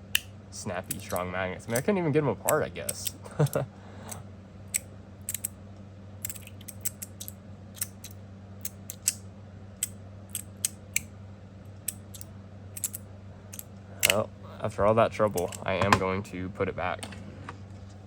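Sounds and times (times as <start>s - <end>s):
metallic clicks of magnetic slider: 2.5s - 5.5s, 6.2s - 9.2s.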